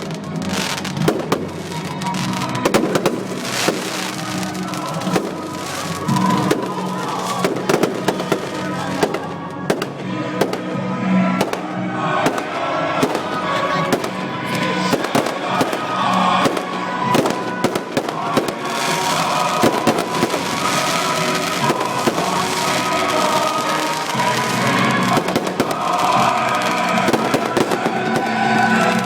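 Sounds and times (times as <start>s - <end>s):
fireworks bangs and crackles: 0.0s - 29.0s
music: 0.0s - 29.0s.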